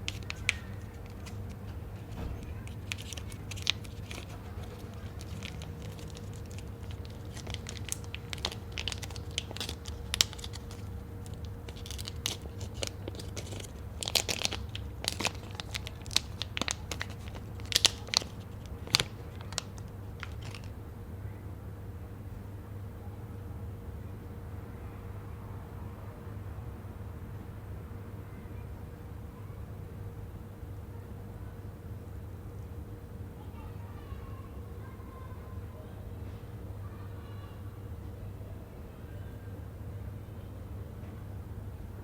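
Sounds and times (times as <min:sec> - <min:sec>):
plastic packaging crinkling: 0:00.0 - 0:20.8
steady low hum: 0:00.0 - 0:25.3.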